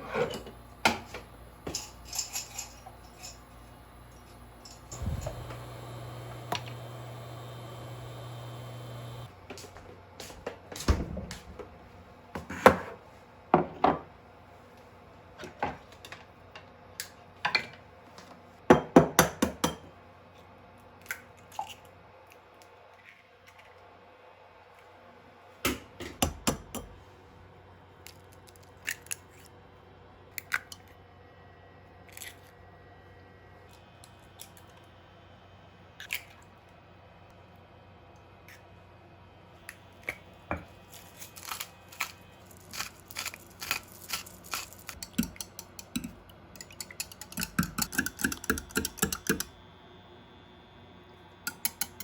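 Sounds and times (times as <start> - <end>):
room hum: 0.0 - 18.6, 22.0 - 52.0
small objects clicking and clattering: 40.9 - 49.5.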